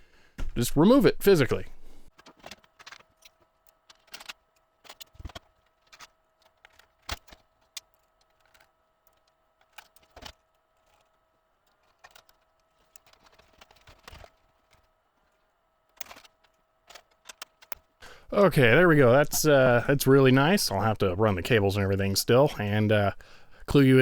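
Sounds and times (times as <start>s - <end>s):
faint steady whine: 0.0s - 2.1s, 18.0s - 24.0s
computer parts clicking and knocking: 2.1s - 22.0s.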